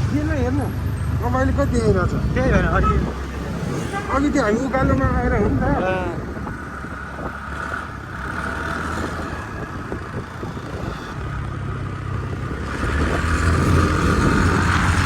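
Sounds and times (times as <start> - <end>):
motor scooter engine revving: 6.4 - 15.0.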